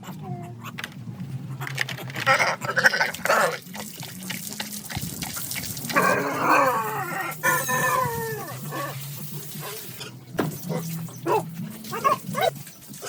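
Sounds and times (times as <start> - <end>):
farm animal calling: 1.5 - 3.7.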